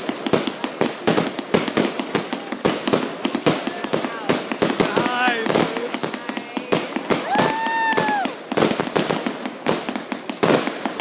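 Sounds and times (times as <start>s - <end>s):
fireworks cracking and popping: 0.0s - 11.0s
firework whistle: 7.1s - 8.5s.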